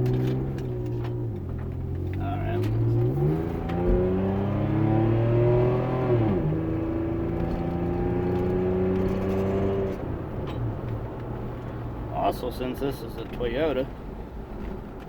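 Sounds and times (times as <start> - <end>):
truck engine accelerating: 0.0 - 11.4.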